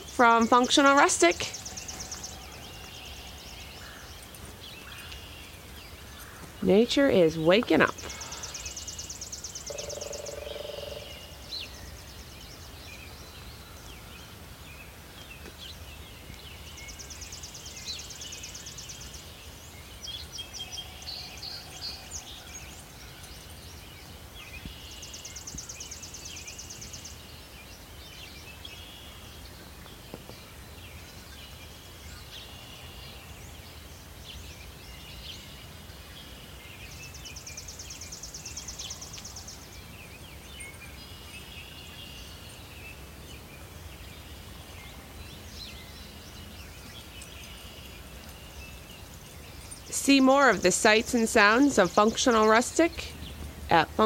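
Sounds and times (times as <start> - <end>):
birds chirping: 0.0 - 54.0
low animal call: 9.7 - 11.5.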